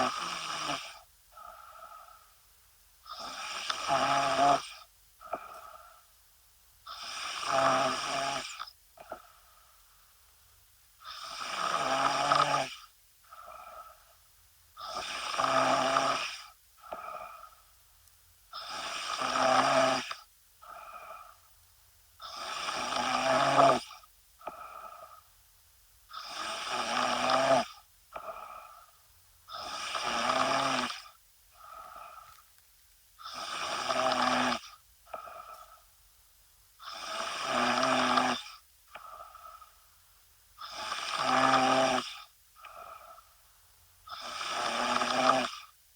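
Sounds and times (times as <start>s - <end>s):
woman snoring: 0.0s - 2.3s, 3.1s - 6.0s, 6.9s - 9.4s, 11.0s - 14.1s, 14.8s - 17.6s, 18.5s - 21.4s, 22.2s - 25.3s, 26.1s - 28.9s, 29.5s - 32.4s, 33.2s - 35.8s, 36.8s - 39.8s, 40.6s - 43.3s, 44.1s - 45.8s.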